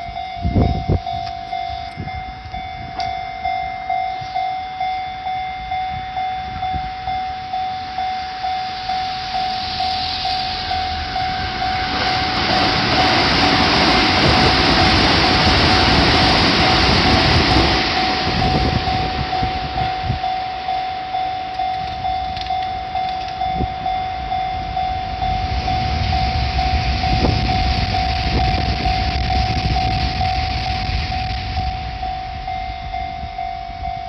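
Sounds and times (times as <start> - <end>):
level-crossing warning bell: 0.0 - 34.0
train rumbling past: 0.0 - 34.0.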